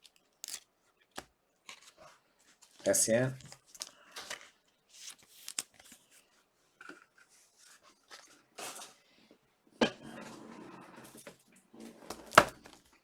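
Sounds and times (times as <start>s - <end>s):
cards rustling and sliding: 0.0s - 2.0s, 2.6s - 6.2s, 12.1s - 12.8s.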